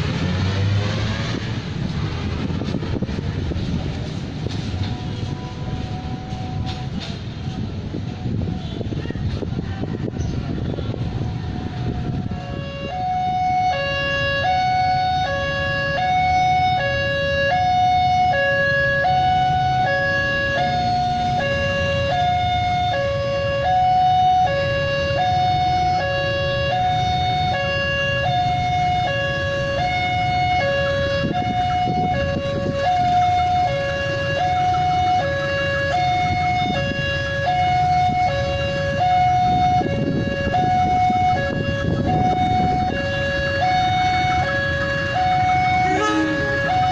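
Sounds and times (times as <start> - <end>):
low traffic rumble: 0.0 - 46.9
two-tone level crossing alarm: 11.6 - 46.9.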